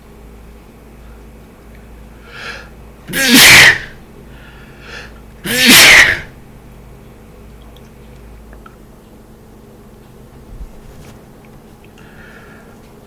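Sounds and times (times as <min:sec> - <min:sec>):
man sneezing: 0:03.1 - 0:04.0, 0:05.4 - 0:06.3
catching in-breath: 0:04.3 - 0:05.2, 0:12.0 - 0:12.8.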